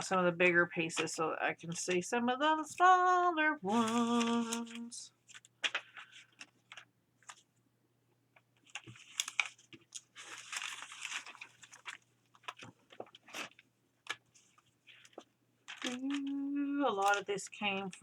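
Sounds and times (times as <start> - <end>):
paper crinkling and rustling: 0.8 - 2.0, 2.6 - 7.5, 8.4 - 18.0.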